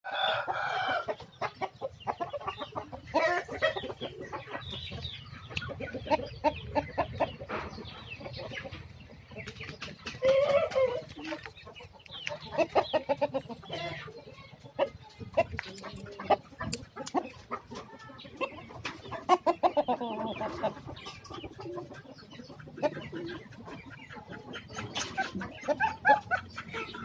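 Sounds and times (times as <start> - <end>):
chickens clucking: 0.1 - 27.0.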